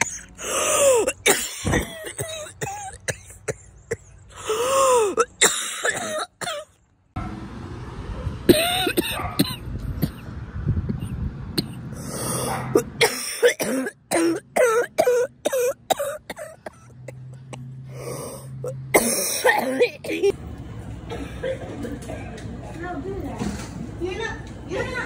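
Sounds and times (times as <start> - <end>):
person coughing: 0.0 - 4.1, 4.8 - 6.7, 12.8 - 17.3, 18.6 - 20.3.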